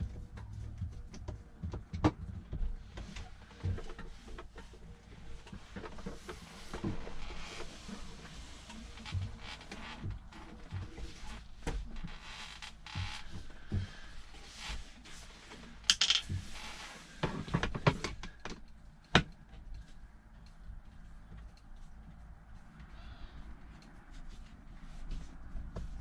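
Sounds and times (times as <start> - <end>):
hand tools clinking and rattling: 15.9 - 16.3.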